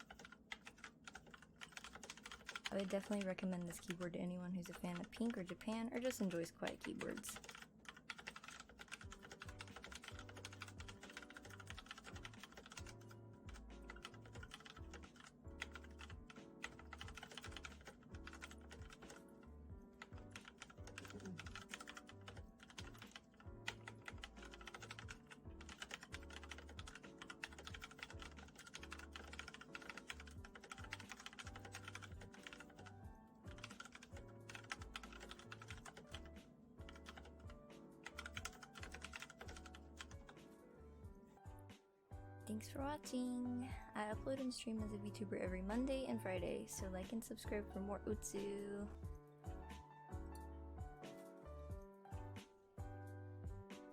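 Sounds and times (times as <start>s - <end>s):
mechanical keyboard typing: 0.0s - 19.4s, 20.0s - 36.3s, 36.9s - 40.4s
background music: 0.0s - 53.9s.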